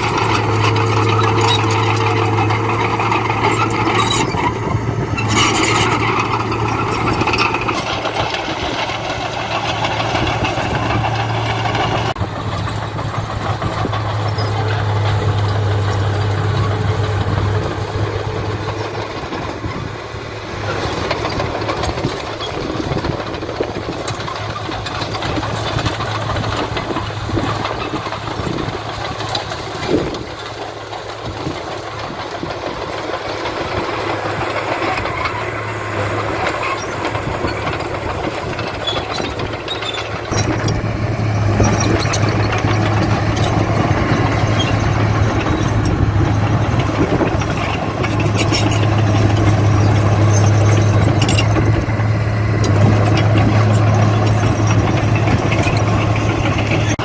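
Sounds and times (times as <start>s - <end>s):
heavy machinery diesel engines: 0.0s - 57.0s
metal clanks: 20.6s - 57.0s.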